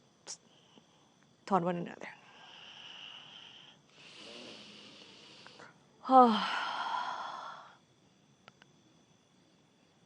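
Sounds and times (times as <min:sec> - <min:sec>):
person breathing: 0:02.2 - 0:07.8.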